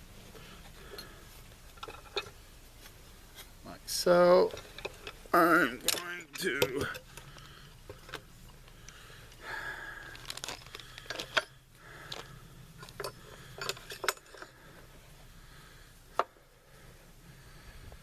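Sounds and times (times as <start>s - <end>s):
metal parts clicking and clinking: 0.8s - 2.4s, 4.4s - 8.7s, 10.1s - 12.2s, 12.8s - 14.6s.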